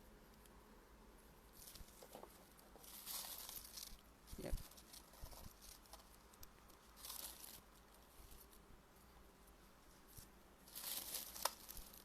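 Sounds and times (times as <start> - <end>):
paper rustling: 1.6 - 8.5, 10.1 - 12.0.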